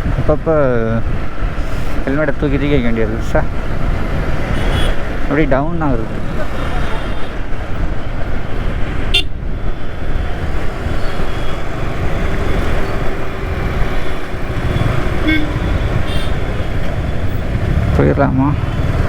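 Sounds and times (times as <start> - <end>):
wind engine and road rumble: 0.0 - 19.0
vehicle horn toots: 4.5 - 5.0, 9.1 - 9.4, 14.7 - 16.6.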